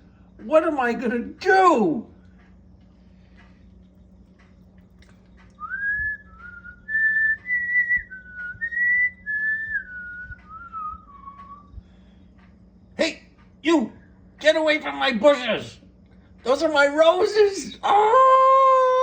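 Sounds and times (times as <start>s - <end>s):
person whistling a tune: 5.6s - 11.8s.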